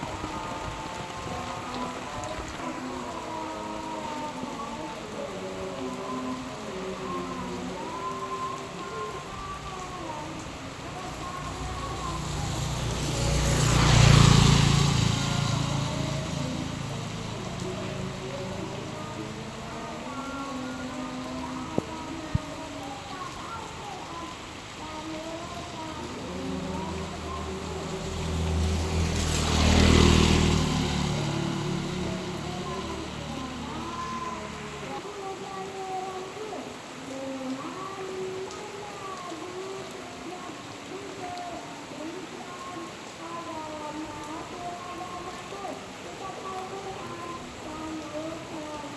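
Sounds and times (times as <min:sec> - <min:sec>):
steady rain: 0:00.0 - 0:48.9
motor vehicle passing: 0:09.0 - 0:35.0.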